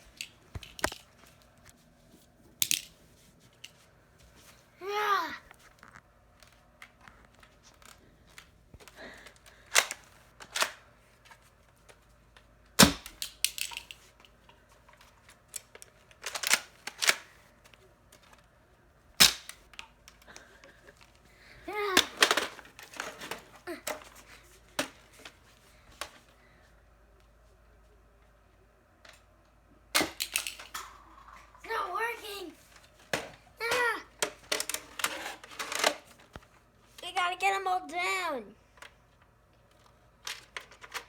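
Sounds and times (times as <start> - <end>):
toy blaster firing cracks: 12.8 - 14.0, 19.2 - 19.6, 30.0 - 31.0.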